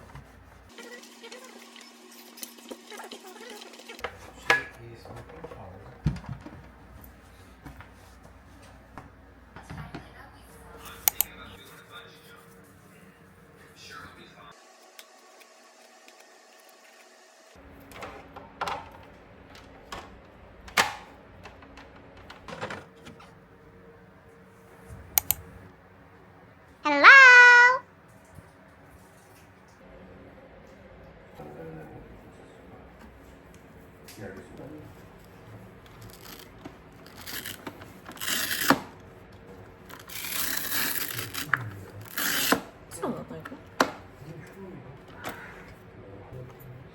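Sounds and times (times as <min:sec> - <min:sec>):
clicks and knocks of objects handled: 0:17.8 - 0:23.3.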